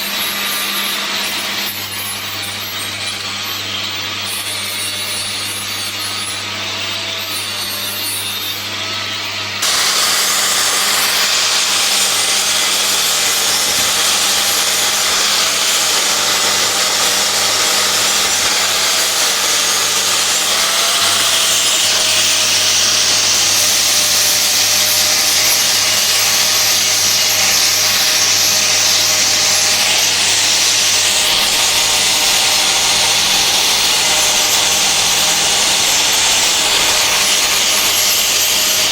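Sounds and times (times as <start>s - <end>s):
angle grinder grinding steel: 0.0s - 38.9s.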